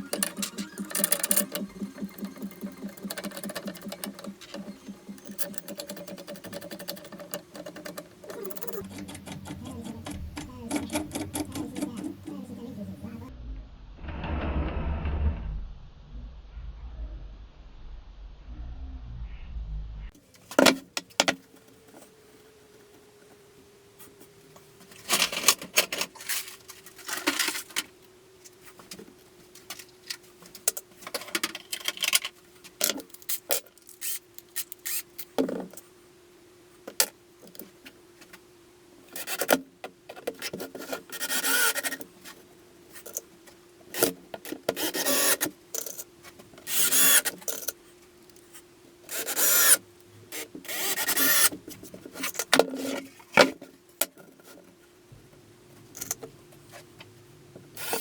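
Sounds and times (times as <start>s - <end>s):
belt grinder humming: 0.0s - 13.2s.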